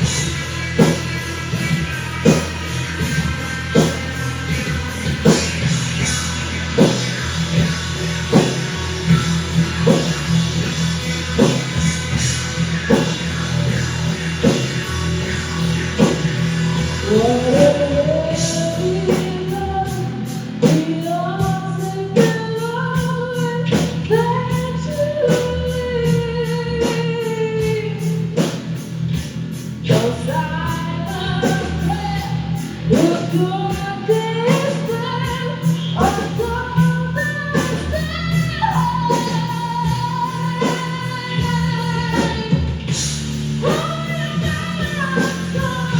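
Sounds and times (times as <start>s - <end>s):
drum kit beat: 0.0s - 45.9s
electric guitar: 0.0s - 45.9s
person singing: 16.9s - 28.5s, 29.9s - 42.8s.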